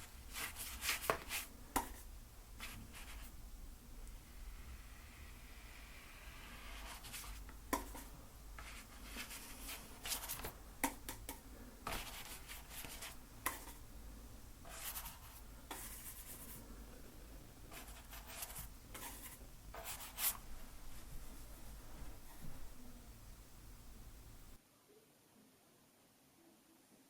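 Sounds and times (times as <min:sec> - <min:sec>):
scratchy painting strokes on canvas: 0:00.0 - 0:03.4, 0:04.2 - 0:10.6, 0:11.8 - 0:13.8, 0:14.6 - 0:16.7, 0:17.7 - 0:22.8.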